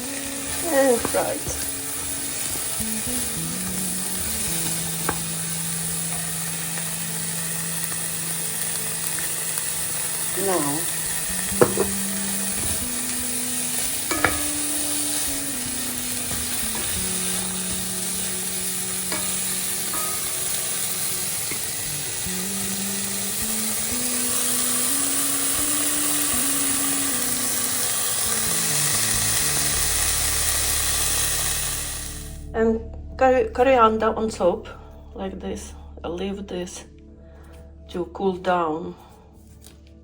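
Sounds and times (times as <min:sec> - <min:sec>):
vegetables sizzling in a pan: 0:00.0 - 0:32.5
utensil knocking: 0:11.3 - 0:13.2, 0:13.8 - 0:21.9.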